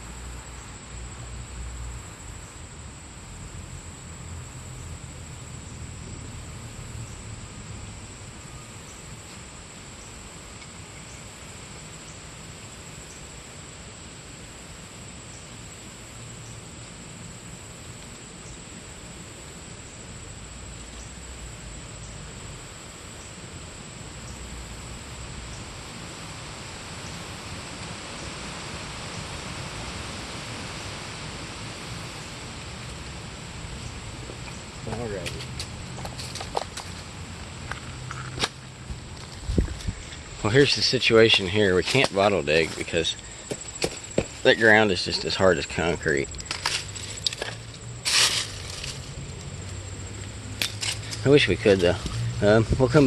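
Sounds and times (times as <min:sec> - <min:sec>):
creek hiss: 0:00.0 - 0:53.0
high-pitched insect drone: 0:39.8 - 0:53.0.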